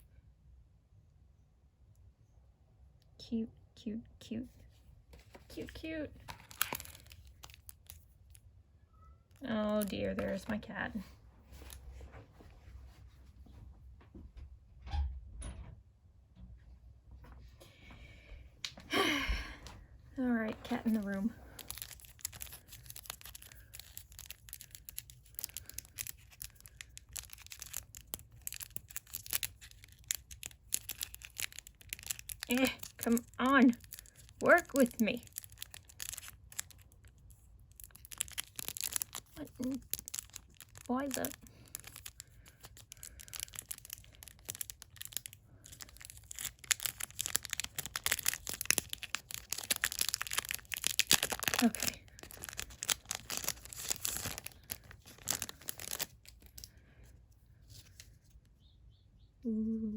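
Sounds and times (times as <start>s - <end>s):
plastic wrapper crinkling: 5.1s - 8.5s, 9.3s - 12.0s, 20.2s - 58.4s.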